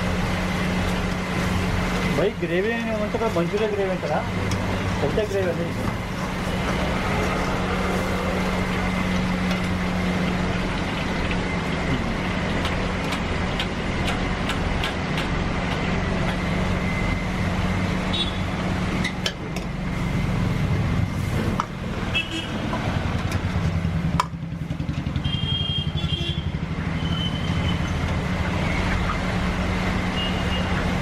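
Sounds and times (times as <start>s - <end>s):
traffic noise: 0.0s - 31.0s
low motor hum: 3.1s - 31.0s
sharp clicks and knocks: 12.5s - 16.4s, 22.7s - 24.4s.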